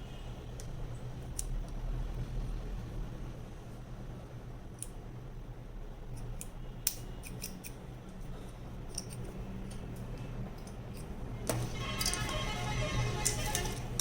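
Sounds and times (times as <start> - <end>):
low steady hum: 0.0 - 14.0
scissors snipping: 6.1 - 7.8.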